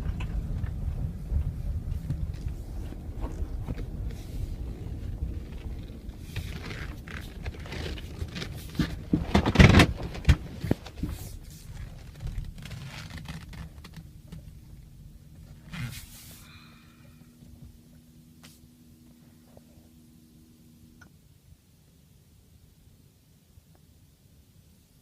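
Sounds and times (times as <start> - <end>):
engine knocks and clatter: 0.0 - 16.0
diesel engine rough idle: 14.1 - 21.0.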